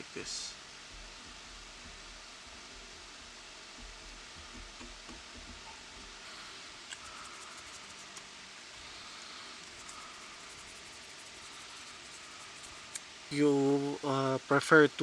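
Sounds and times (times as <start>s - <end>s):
steady hiss: 0.0s - 15.0s
scriber scratching plastic: 7.0s - 8.3s.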